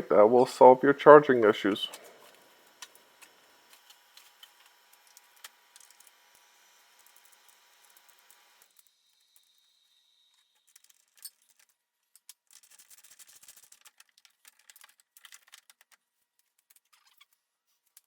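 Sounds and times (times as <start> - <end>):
faint clicks and rattling: 10.7 - 18.0.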